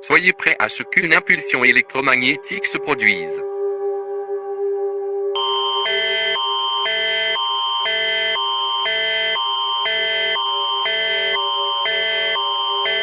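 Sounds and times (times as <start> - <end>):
alternating alert chords: 5.4 - 13.0
steady high tone: 5.4 - 13.0.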